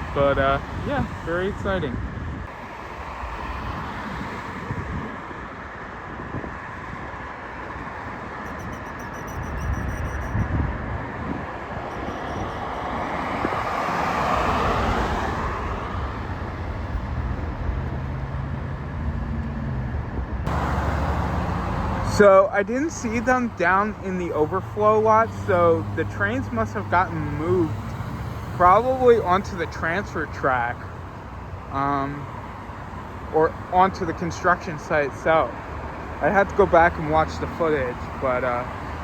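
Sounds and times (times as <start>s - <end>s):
passing vehicles: 0.0s - 39.0s
low engine hum: 7.8s - 33.7s.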